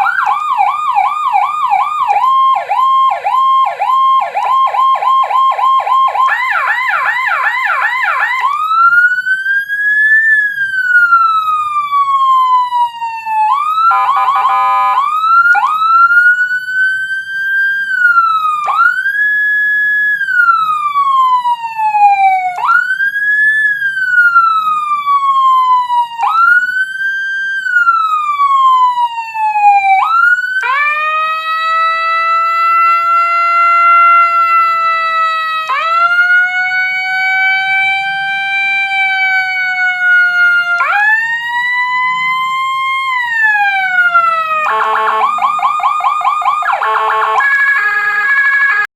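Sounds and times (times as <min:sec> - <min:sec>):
electronic siren: 0:00.0 - 0:48.9
buzzing horn blast: 0:46.8 - 0:48.9.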